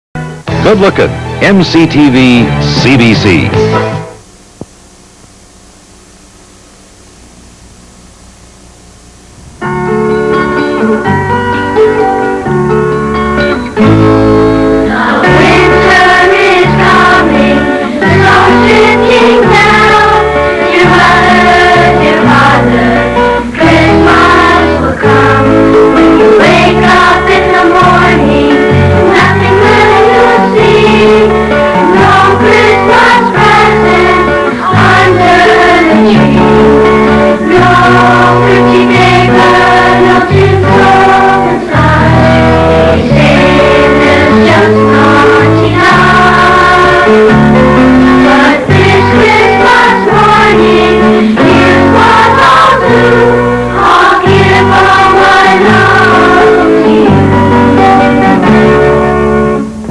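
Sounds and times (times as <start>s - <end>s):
instrumental accompaniment with bass: 0.2s - 4.2s, 9.5s - 59.9s
children's choir singing: 14.2s - 58.8s.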